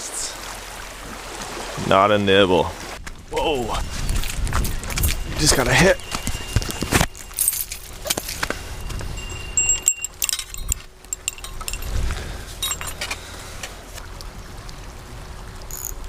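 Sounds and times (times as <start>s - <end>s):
small bell jingling on fishing rod: 4.7s - 12.0s, 12.6s - 13.2s.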